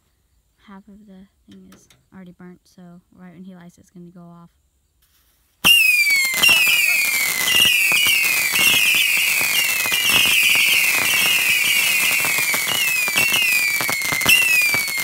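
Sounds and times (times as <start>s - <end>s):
sharp pops and crackles: 5.0s - 15.0s
whistling rockets: 5.6s - 15.0s.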